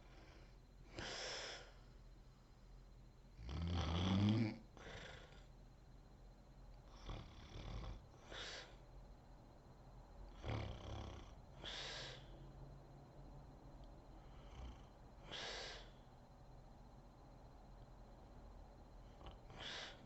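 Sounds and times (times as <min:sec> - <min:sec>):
breathy exhales: 0:00.0 - 0:01.9, 0:08.2 - 0:08.8, 0:11.6 - 0:12.4, 0:14.2 - 0:16.0, 0:19.2 - 0:20.0
woman snoring: 0:03.4 - 0:05.5, 0:06.9 - 0:08.7, 0:10.3 - 0:12.3, 0:19.2 - 0:20.0.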